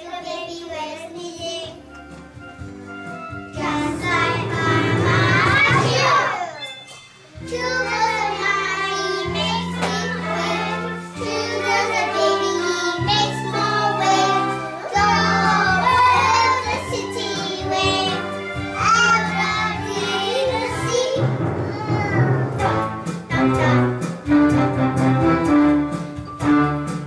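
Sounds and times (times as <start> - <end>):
child singing: 0.0 - 1.8, 3.6 - 6.7, 7.4 - 22.8
held accompaniment chords: 1.4 - 27.0.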